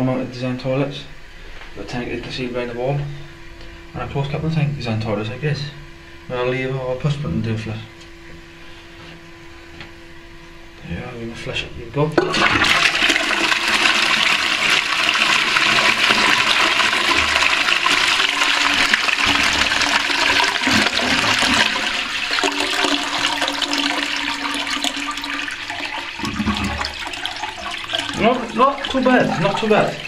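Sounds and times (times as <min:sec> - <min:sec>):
toilet flushing: 0:12.2 - 0:30.0.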